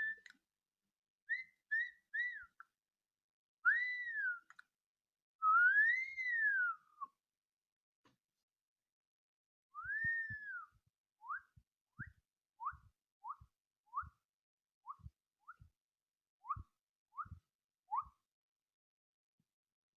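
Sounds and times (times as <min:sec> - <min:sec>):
girl whistling softly: 0:00.0 - 0:00.4, 0:01.3 - 0:02.7, 0:03.6 - 0:04.6, 0:05.4 - 0:07.2, 0:09.7 - 0:14.2, 0:14.9 - 0:15.7, 0:16.4 - 0:18.3.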